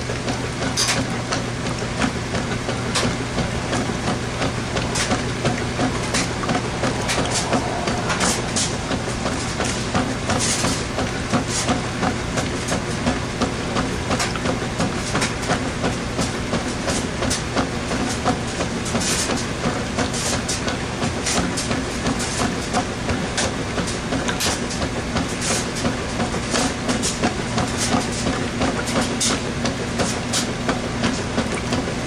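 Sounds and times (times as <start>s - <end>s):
washing machine motor hum: 0.0s - 18.8s.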